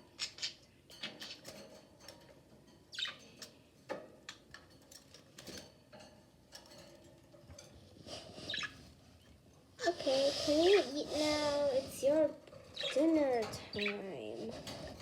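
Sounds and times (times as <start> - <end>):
budgerigars chirping: 0.1 - 1.5, 3.0 - 3.2, 8.4 - 8.8.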